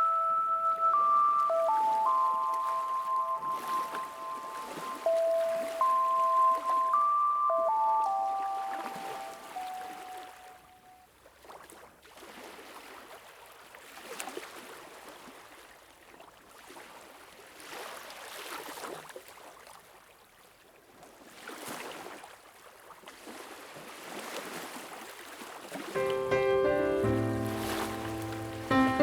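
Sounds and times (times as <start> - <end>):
rushing water wash: 26.0 - 29.0.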